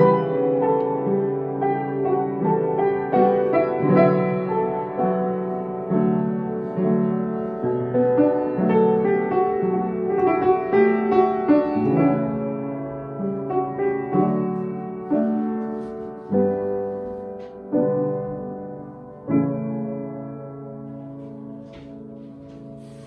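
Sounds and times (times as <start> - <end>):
piano playing: 0.0 - 23.0.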